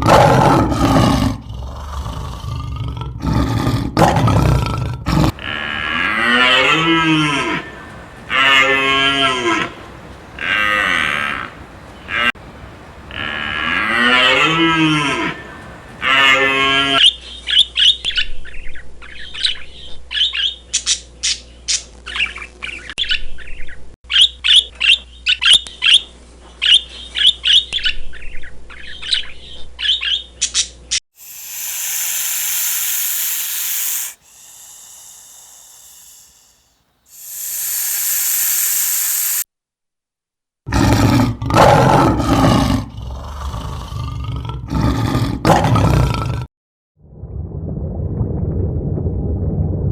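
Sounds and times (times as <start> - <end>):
low rough animal call: 0.0 - 17.0, 31.2 - 39.4
cow mooing: 5.3 - 12.3, 13.1 - 17.0
rushing noise: 7.6 - 13.3, 31.2 - 39.4.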